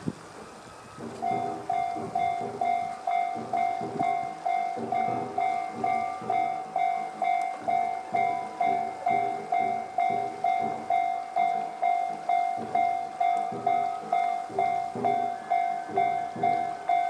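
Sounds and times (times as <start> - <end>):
level crossing alarm dinging: 0.9 - 17.0.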